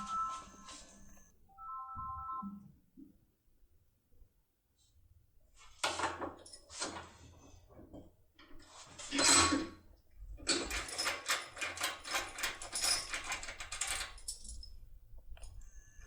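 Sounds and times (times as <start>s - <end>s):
keys and metal parts clinking: 10.4s - 15.8s.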